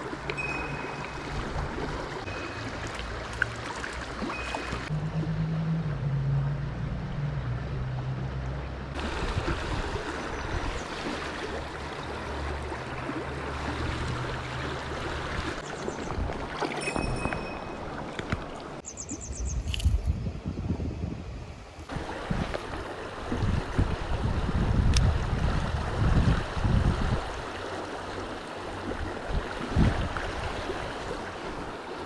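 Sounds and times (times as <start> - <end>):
stream water rushing: 0.0 - 5.9, 6.7 - 18.8, 21.6 - 32.0
wind rumble on microphone: 4.9 - 10.9, 13.4 - 18.4, 19.0 - 27.6, 28.7 - 31.7.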